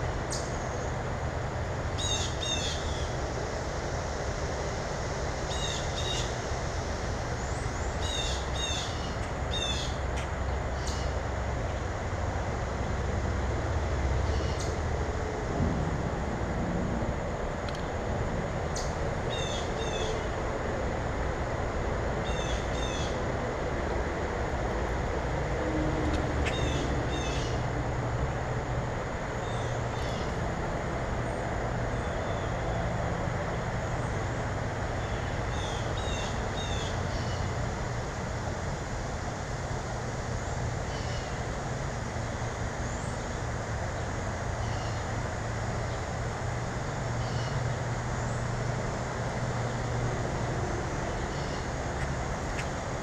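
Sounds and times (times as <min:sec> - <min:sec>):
steady low rumble: 0:06.3 - 0:32.6.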